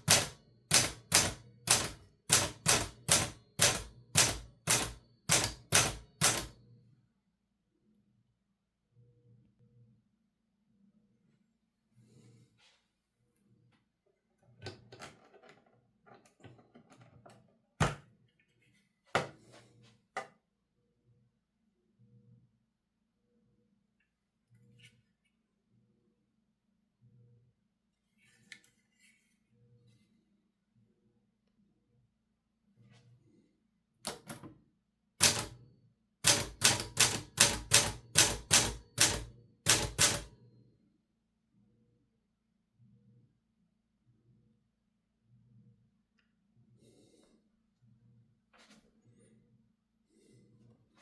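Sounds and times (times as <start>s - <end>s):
typewriter clacks and clunks: 0.0s - 6.6s, 35.2s - 35.6s, 36.2s - 40.3s
typewriter rattling: 0.0s - 6.6s, 35.2s - 35.6s, 36.2s - 40.3s.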